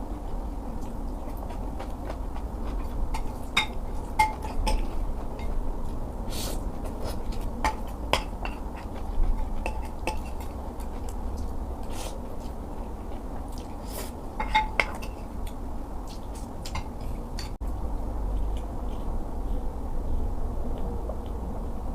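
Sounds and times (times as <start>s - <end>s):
steady low hum: 0.0s - 21.9s
cutlery clinking against bowl: 3.1s - 5.6s, 7.2s - 11.2s, 14.4s - 15.3s, 16.6s - 17.6s.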